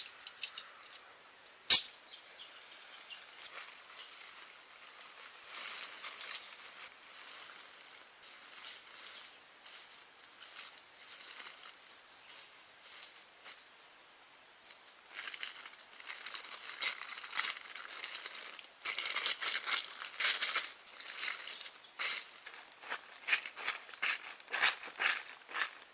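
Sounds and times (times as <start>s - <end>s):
crinkling and rustling: 0.0s - 1.9s.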